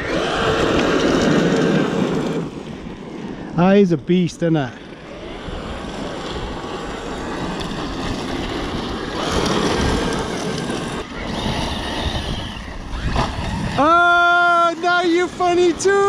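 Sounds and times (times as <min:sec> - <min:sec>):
rc trucks driving over gravel: 0:00.0 - 0:16.0.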